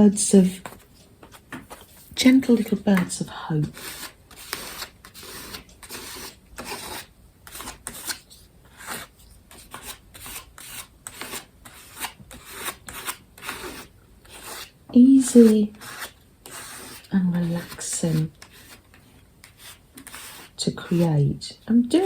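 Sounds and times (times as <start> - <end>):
scraper rasping paint on paper: 2.5 - 8.2, 9.7 - 21.2.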